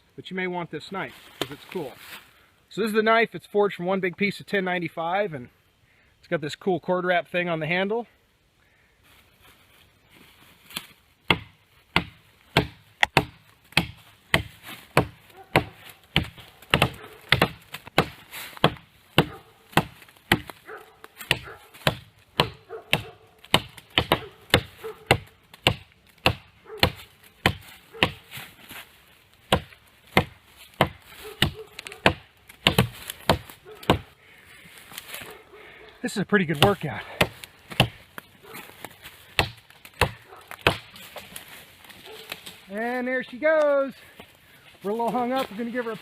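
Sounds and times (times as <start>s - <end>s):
knife chopping into wood: 11.3s - 28.2s, 29.5s - 34.1s, 36.6s - 38.0s, 39.3s - 41.2s.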